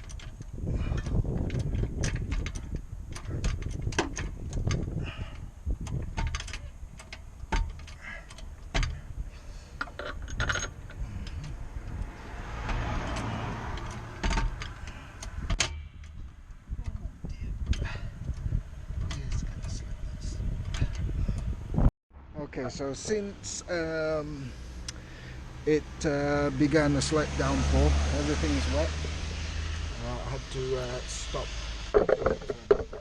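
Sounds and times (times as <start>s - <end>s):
metal tools clinking: 9.8s - 11.5s.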